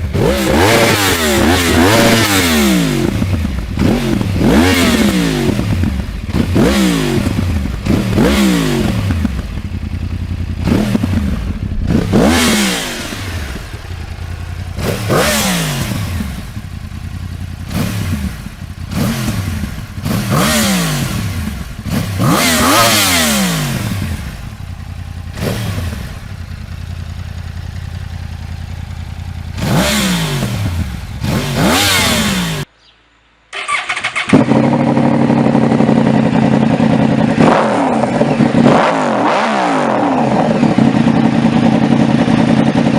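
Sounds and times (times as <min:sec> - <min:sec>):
motorcycle engine revving: 0:00.0 - 0:32.7, 0:33.5 - 0:42.9.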